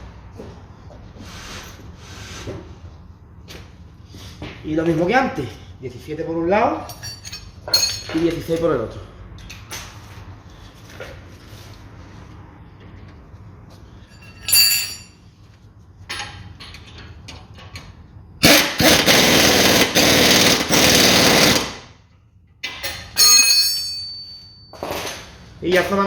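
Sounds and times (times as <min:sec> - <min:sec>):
metal tool clink: 0:06.8 - 0:08.8, 0:14.1 - 0:15.2, 0:22.6 - 0:25.2
impact wrench hammering: 0:18.4 - 0:22.0.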